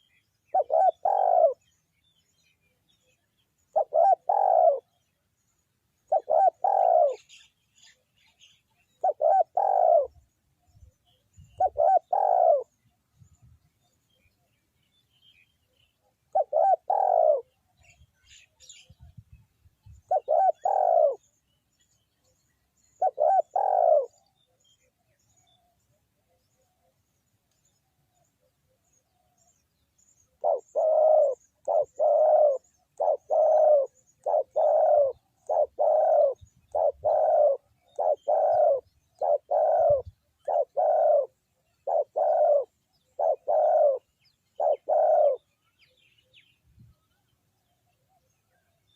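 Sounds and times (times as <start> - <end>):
dove cooing: 0.0 - 1.8, 2.9 - 5.2, 6.0 - 10.4, 11.0 - 12.8, 15.3 - 21.4, 22.9 - 24.8, 30.2 - 46.4.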